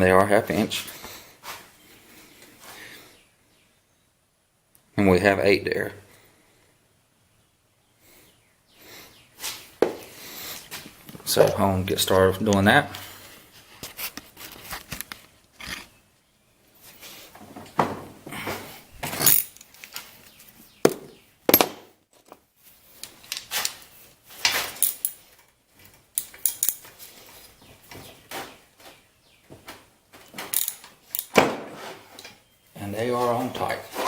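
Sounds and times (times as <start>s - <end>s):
metal hand tools clinking: 19.1s - 19.8s, 24.5s - 25.4s, 26.1s - 27.0s, 30.4s - 31.4s.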